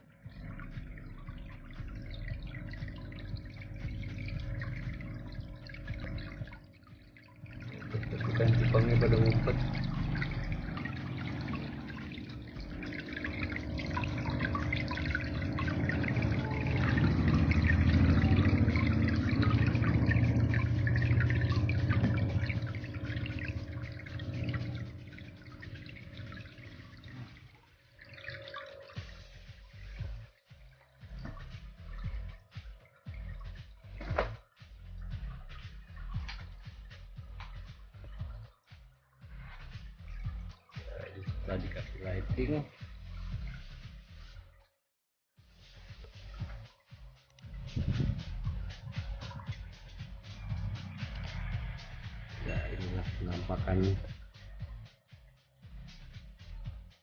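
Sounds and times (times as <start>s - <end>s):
low steady hum: 0.0s - 32.5s, 47.4s - 54.9s
music with low repeating beat: 0.0s - 44.6s, 45.4s - 57.0s
water trickling and dripping: 0.0s - 44.8s, 45.4s - 57.0s.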